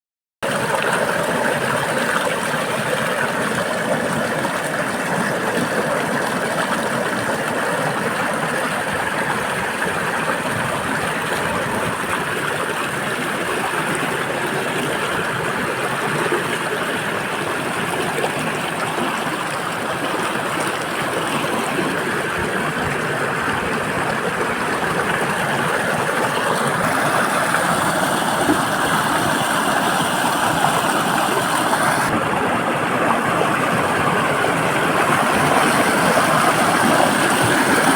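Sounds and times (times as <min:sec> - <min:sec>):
waterfall rushing: 0:26.0 - 0:37.9.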